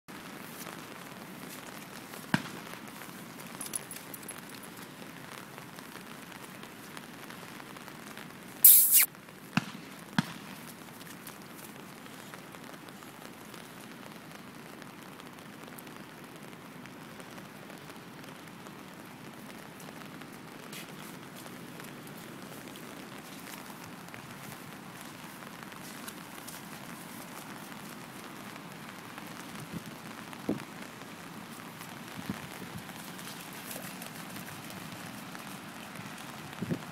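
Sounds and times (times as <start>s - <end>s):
steady rain falling: 0.1s - 36.9s
loud brief rush of noise: 8.7s - 9.1s.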